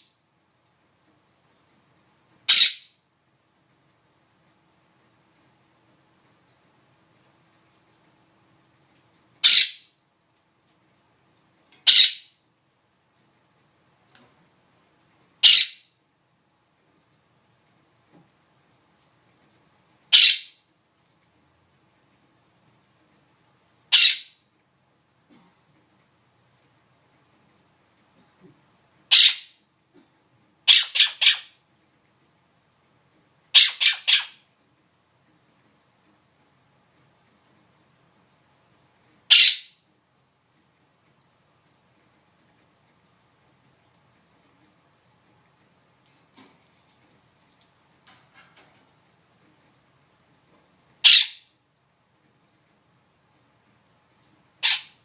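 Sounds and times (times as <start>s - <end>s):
pet bird squawking: 2.5s - 3.0s, 9.4s - 9.9s, 11.8s - 12.3s, 15.4s - 15.9s, 20.1s - 20.6s, 23.9s - 24.4s, 29.1s - 29.6s, 30.6s - 31.6s, 33.5s - 34.4s, 39.3s - 39.8s, 51.0s - 51.5s, 54.6s - 55.0s.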